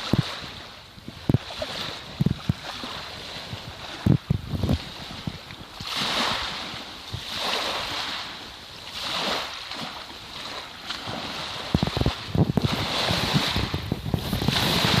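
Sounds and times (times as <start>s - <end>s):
water swishing: 0.0s - 15.0s
wind rumbling on microphone: 0.0s - 15.0s.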